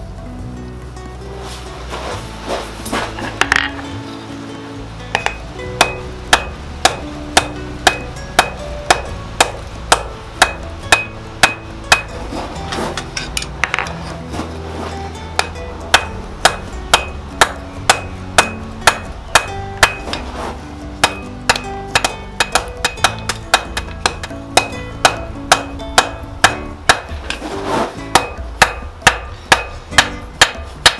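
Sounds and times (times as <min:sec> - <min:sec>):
hammer striking steel on anvil: 0:05.1 - 0:14.2, 0:14.8 - 0:20.4, 0:21.0 - 0:30.9.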